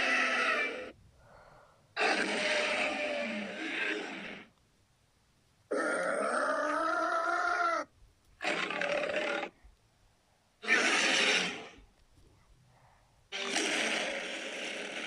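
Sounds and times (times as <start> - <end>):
monster roar: 0.0 - 0.9, 2.0 - 4.5, 5.7 - 9.5, 10.6 - 11.8, 13.4 - 15.0.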